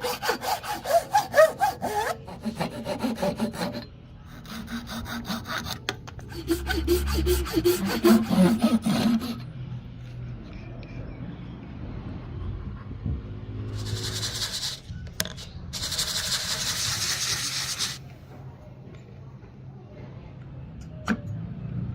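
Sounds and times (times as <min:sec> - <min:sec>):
hand saw cutting wood: 0:00.0 - 0:09.4.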